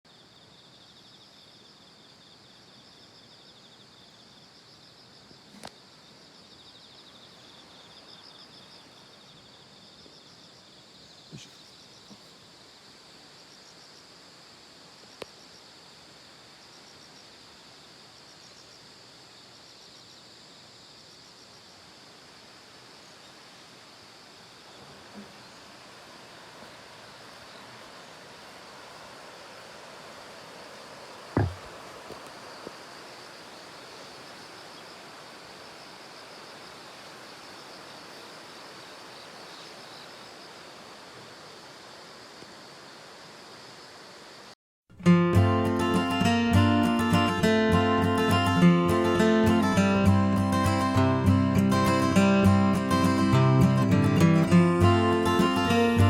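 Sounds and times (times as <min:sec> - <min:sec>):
steady hiss: 0:00.1 - 0:44.6.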